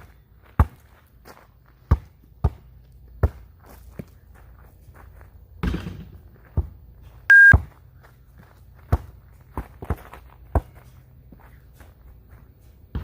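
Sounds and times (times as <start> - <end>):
basketball bouncing: 5.6 - 6.7
loud single-tone beep: 7.3 - 7.6.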